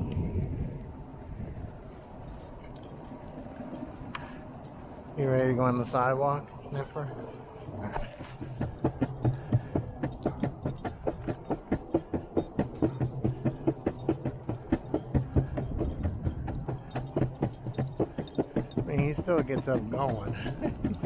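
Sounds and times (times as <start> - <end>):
skateboard wheels rolling on concrete: 5.5 - 21.0
skateboard clacking over joints: 8.0 - 21.0.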